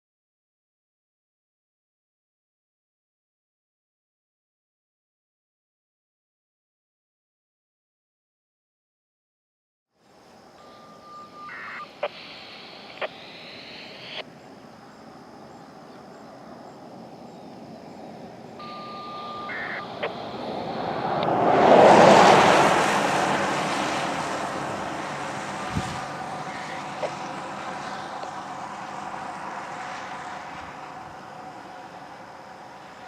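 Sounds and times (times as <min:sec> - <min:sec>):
passing vehicle: 0:10.0 - 0:33.0
siren activation tones over radio: 0:10.6 - 0:14.2, 0:18.6 - 0:21.4, 0:25.8 - 0:28.3
radio clicks: 0:11.5 - 0:14.2, 0:19.5 - 0:20.2, 0:26.5 - 0:27.3.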